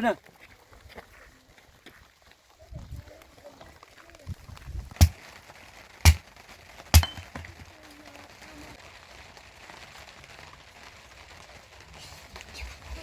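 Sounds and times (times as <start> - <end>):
faint background noise: 0.0 - 13.0
sharp loud impacts: 5.0 - 5.2, 7.0 - 7.6.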